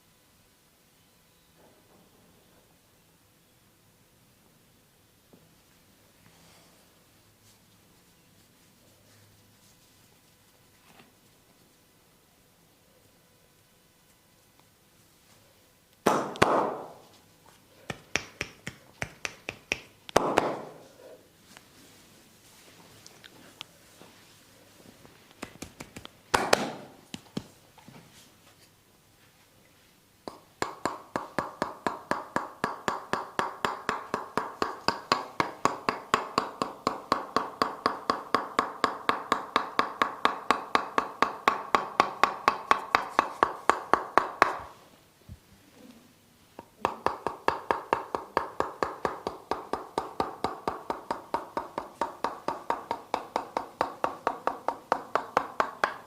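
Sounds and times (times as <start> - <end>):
percussive massage taps: 16.0 - 17.2, 17.9 - 20.8, 25.3 - 27.6, 30.2 - 44.8, 46.6 - 56.0.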